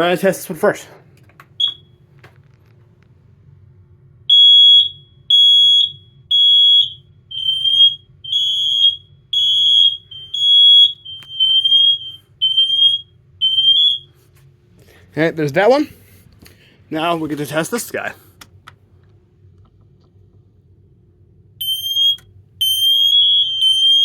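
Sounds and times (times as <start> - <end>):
smoke alarm chirp: 1.6 - 2.0, 4.3 - 14.2, 21.6 - 24.0
smoke alarm high-pitched beeps: 1.6 - 2.0, 4.3 - 14.2, 21.6 - 24.0.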